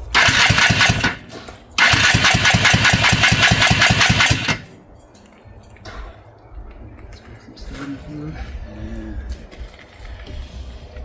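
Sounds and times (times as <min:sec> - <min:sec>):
engine cranking on electric starter: 0:00.0 - 0:04.8.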